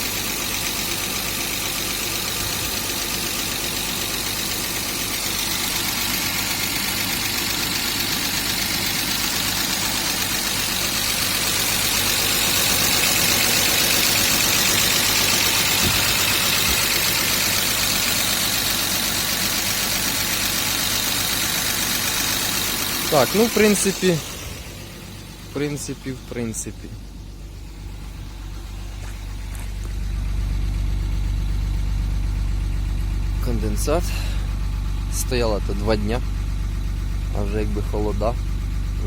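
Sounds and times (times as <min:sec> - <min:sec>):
car engine idling: 0:00.0 - 0:39.0.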